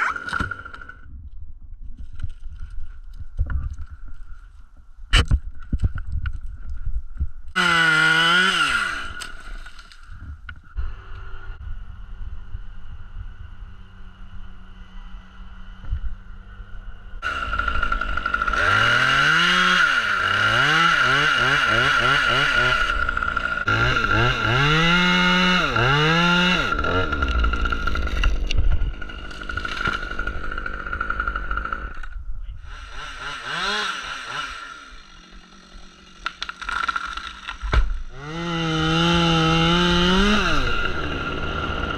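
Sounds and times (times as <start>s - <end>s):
chainsaw idling and revving: 7.5s - 9.7s, 17.2s - 41.9s.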